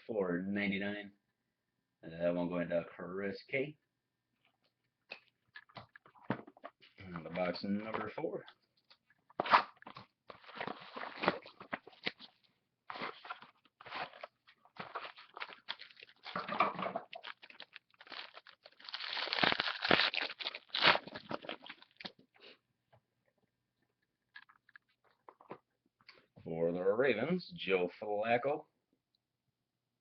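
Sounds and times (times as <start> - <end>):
plastic wrap crinkling: 9.4 - 22.1.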